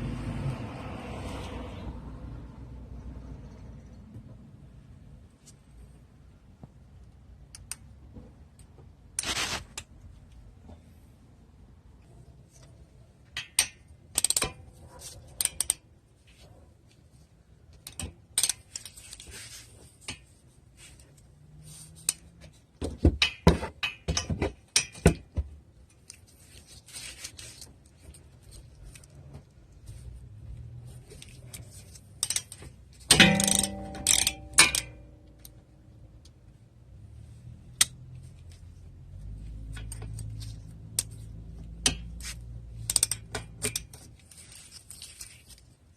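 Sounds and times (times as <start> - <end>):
tools clicking and clinking: 13.3 - 15.8, 17.7 - 19.3, 31.1 - 36.4, 39.6 - 45.4
ringing metal clank: 33.1 - 35.5.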